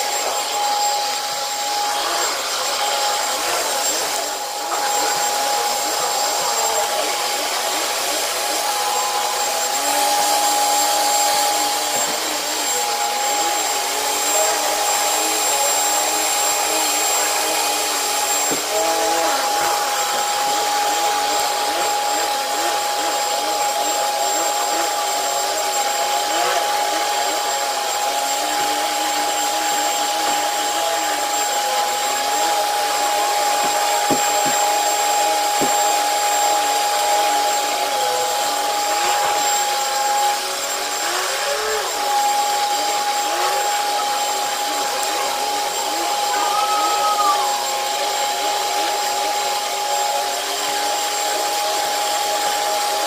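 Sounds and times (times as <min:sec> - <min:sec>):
vacuum cleaner running on carpet: 0:00.0 - 0:53.0.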